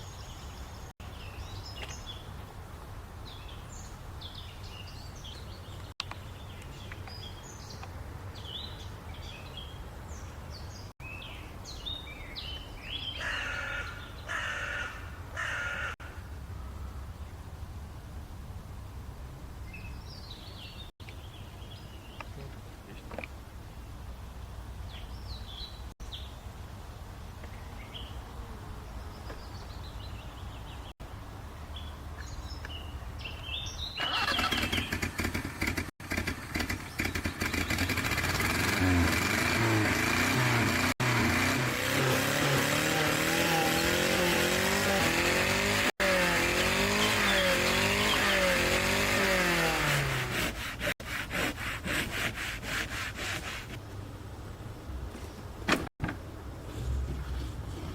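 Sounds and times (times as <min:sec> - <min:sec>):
engine revving: 0:34.0 - 0:51.0.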